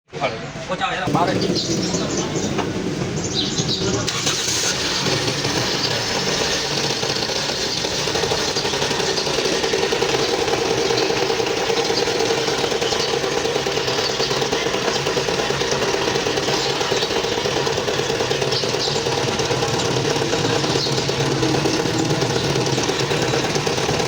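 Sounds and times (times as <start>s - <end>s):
car engine with fast rattle: 1.1s - 24.0s.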